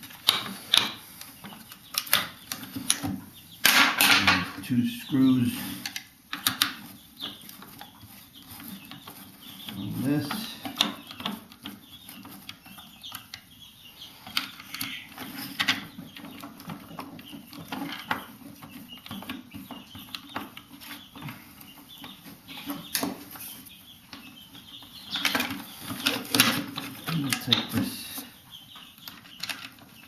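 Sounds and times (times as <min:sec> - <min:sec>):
plastic parts knocking: 0:00.0 - 0:04.7, 0:25.1 - 0:28.3.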